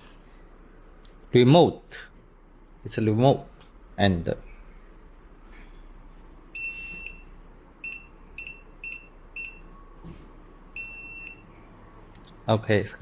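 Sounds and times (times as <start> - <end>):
alarm buzzer beeping: 6.6 - 9.7, 10.8 - 11.5.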